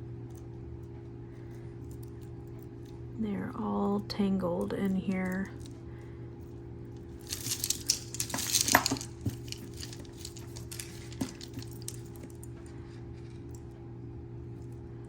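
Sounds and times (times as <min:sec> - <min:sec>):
metal chains clinking: 0:07.2 - 0:12.3.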